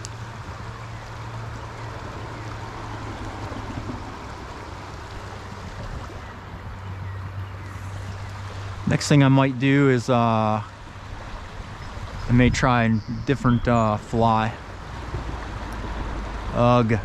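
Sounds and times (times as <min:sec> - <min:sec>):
stream water running: 0:00.0 - 0:17.0.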